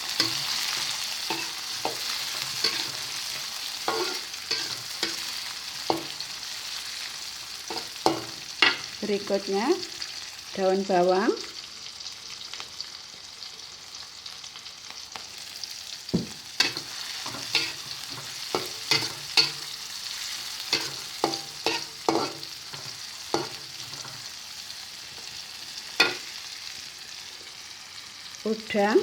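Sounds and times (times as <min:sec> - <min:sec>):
food sizzling in hot oil: 0:00.0 - 0:29.0
spatula knocking and scraping pan: 0:00.1 - 0:06.2, 0:07.7 - 0:08.9, 0:16.1 - 0:19.8, 0:20.7 - 0:24.3.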